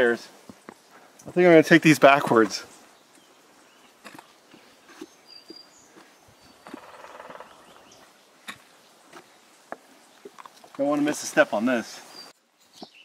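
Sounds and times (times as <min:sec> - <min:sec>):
woodpecker drumming: 0:02.1 - 0:11.2
bird chirps: 0:02.6 - 0:10.4, 0:12.0 - 0:13.0.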